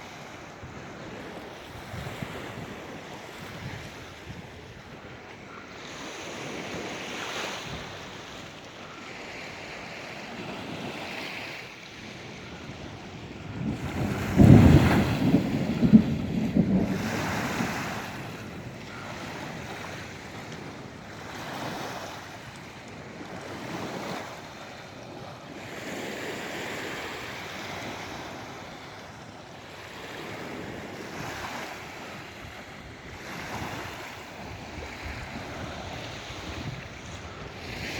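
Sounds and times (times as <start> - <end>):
wind blowing across microphone: 0.0 - 8.6, 9.6 - 37.9
sea waves washing onto shore: 0.0 - 37.9.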